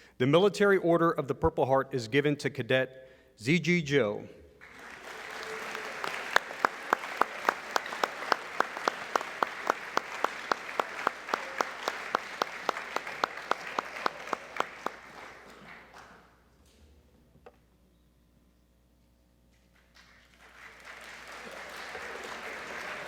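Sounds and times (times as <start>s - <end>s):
audience applauding: 4.6s - 16.3s, 19.8s - 23.0s.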